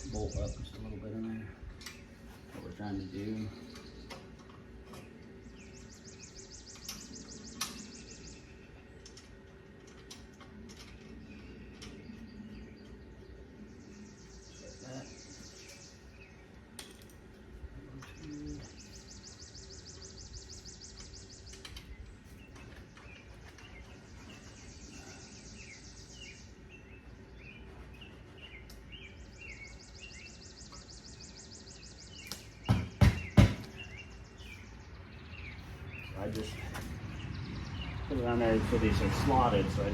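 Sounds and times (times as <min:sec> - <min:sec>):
birds chirping: 0:00.0 - 0:39.9
sharp loud knocks: 0:32.7 - 0:33.7.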